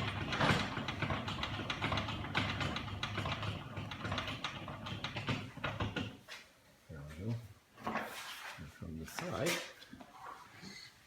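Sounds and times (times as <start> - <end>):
handwheel cranking clicks and rattles: 0.0 - 5.9.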